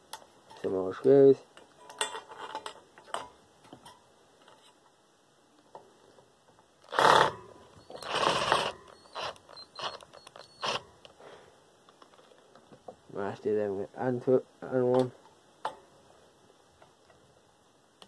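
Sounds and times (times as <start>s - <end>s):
screwdriver scraping rasps: 6.8s - 10.9s.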